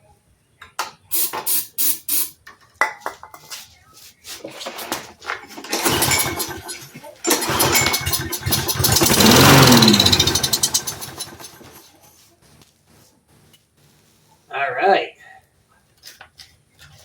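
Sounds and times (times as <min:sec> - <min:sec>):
mower starter cord pulled: 0:05.4 - 0:11.8
small mower engine running: 0:05.5 - 0:11.8.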